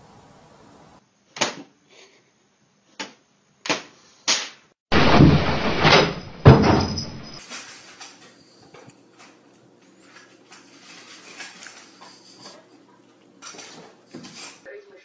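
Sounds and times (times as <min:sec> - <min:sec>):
sharp knocks: 0:04.9 - 0:07.4
noisy clatter with heavy bang: 0:04.9 - 0:08.1.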